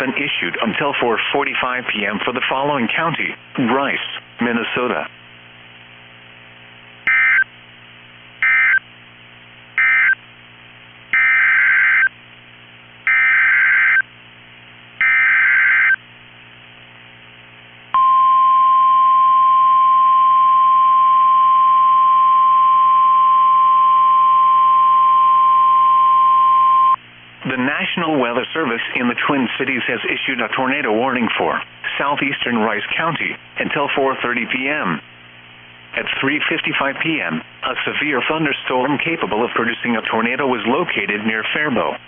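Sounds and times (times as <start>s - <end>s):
loud warning alarm tone: 7.1s - 7.4s, 8.4s - 8.8s, 9.8s - 10.2s, 11.2s - 12.1s, 13.1s - 14.0s, 15.0s - 16.0s.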